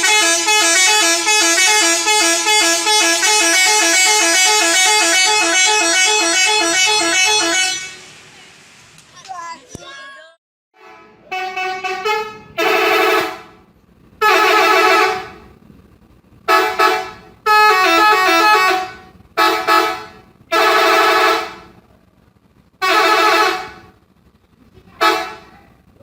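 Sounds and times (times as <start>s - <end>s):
multi-tone musical air horn: 0.0s - 8.2s, 10.8s - 13.6s, 14.2s - 15.4s, 16.5s - 21.7s, 22.8s - 23.9s, 25.0s - 25.5s.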